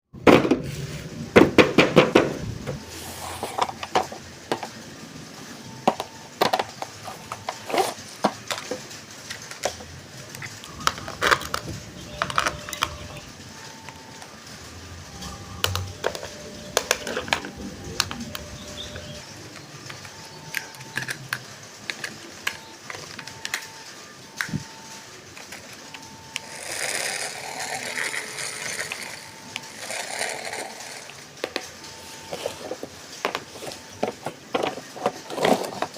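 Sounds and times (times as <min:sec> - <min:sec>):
faint steady tones: 0:00.8 - 0:35.9
plastic and cardboard rustling: 0:05.7 - 0:14.4, 0:26.9 - 0:35.9.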